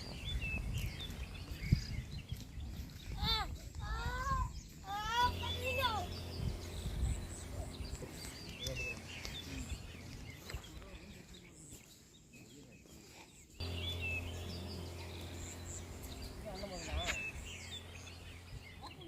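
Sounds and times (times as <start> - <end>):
small birds chirping: 0.0 - 19.0
faint voices: 2.8 - 19.0
steady low hum: 4.8 - 10.6, 13.6 - 19.0.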